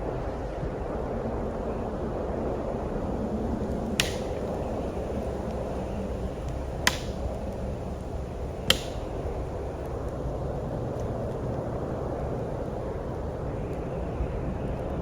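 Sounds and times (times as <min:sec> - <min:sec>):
sharp clicks: 0:04.0 - 0:04.7, 0:06.4 - 0:07.6, 0:08.6 - 0:09.4.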